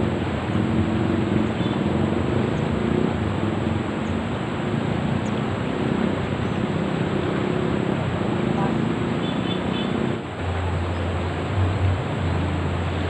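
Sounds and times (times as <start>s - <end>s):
engine running: 0.0s - 13.0s
water rushing: 0.0s - 13.0s.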